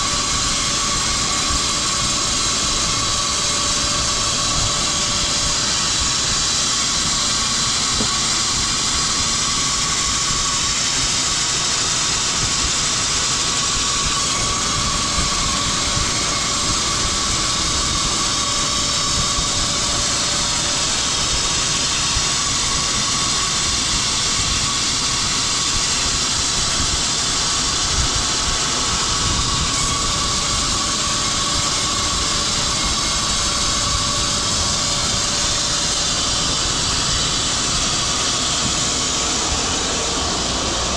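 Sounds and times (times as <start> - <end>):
woodworking machinery whirring: 0.0 - 40.9.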